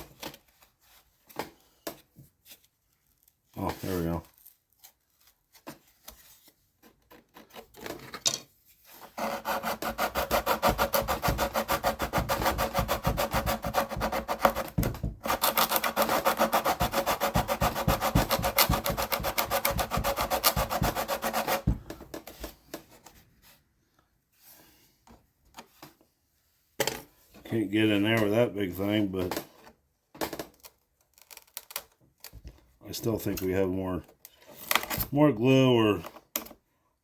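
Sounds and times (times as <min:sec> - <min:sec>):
rasping strokes on wood: 0:09.0 - 0:21.9.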